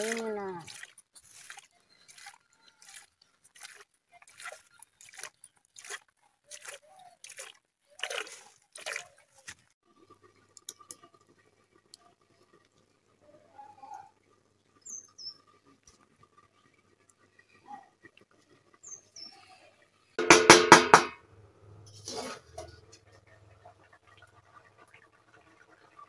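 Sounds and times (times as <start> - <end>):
wet crunching strokes: 0.0 - 9.8.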